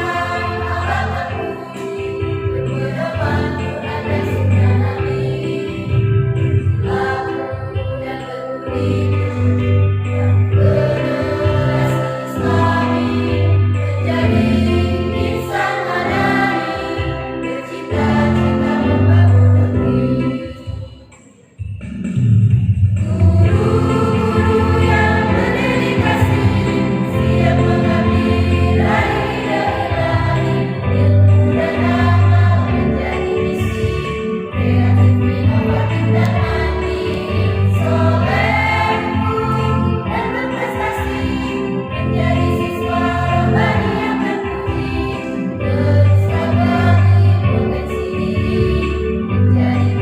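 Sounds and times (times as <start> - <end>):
steady bass notes: 0.0 - 1.6, 2.5 - 8.0, 22.0 - 50.0
choir singing in unison: 0.0 - 20.8, 23.0 - 50.0.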